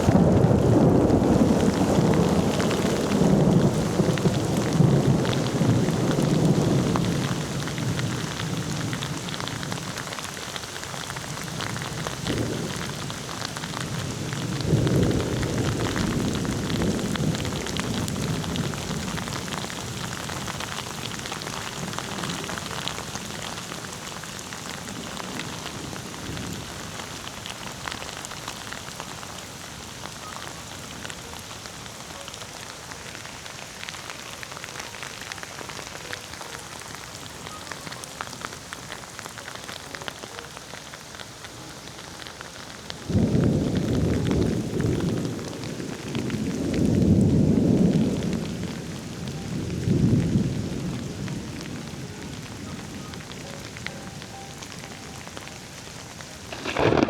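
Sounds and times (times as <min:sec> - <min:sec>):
thunder rumbling: 0:00.0 - 0:10.2, 0:11.1 - 0:24.1, 0:42.9 - 0:57.0
steady rain falling: 0:00.0 - 0:57.0.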